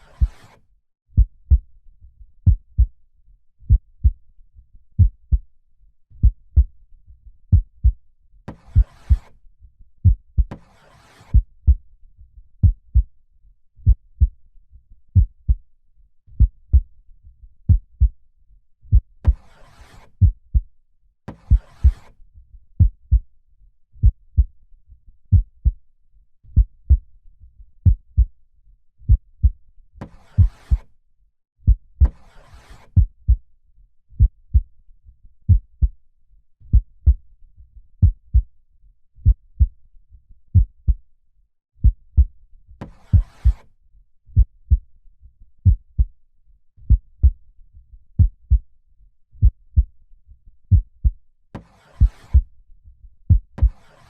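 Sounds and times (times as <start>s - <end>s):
heartbeat thumping: 1.2s - 1.6s, 2.4s - 2.9s, 3.7s - 4.2s, 5.0s - 5.4s, 7.5s - 8.0s, 12.6s - 13.0s, 13.8s - 14.3s, 16.4s - 16.8s, 20.2s - 20.7s, 22.8s - 23.2s, 24.0s - 24.5s, 25.3s - 25.8s, 26.6s - 27.0s, 34.2s - 34.6s, 35.5s - 35.9s, 36.7s - 37.2s, 38.0s - 38.4s, 39.2s - 39.7s, 40.5s - 41.0s, 43.1s - 43.6s, 46.9s - 47.4s, 48.2s - 48.6s, 49.4s - 49.9s, 50.7s - 51.1s, 53.3s - 53.8s.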